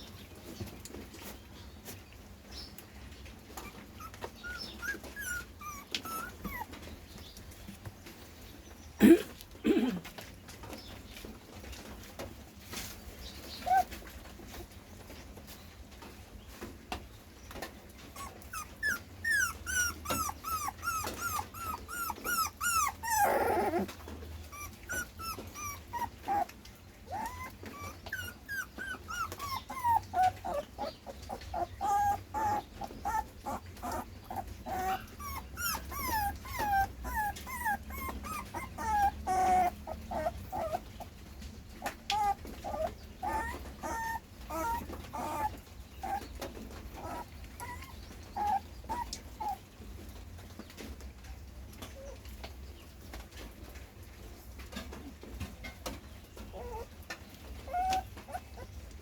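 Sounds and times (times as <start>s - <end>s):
puppy whimpering: 3.4s - 7.8s, 13.5s - 14.1s, 17.9s - 49.8s, 56.3s - 59.0s.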